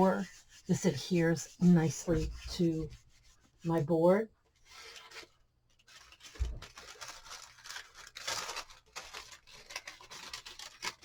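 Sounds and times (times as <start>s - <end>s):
paper crinkling and rustling: 4.5s - 11.0s.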